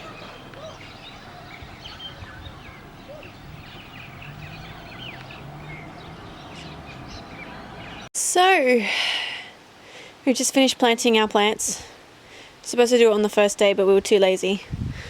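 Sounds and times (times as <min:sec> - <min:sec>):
small birds chirping: 0:00.0 - 0:08.1
outdoor background noise: 0:00.0 - 0:15.0.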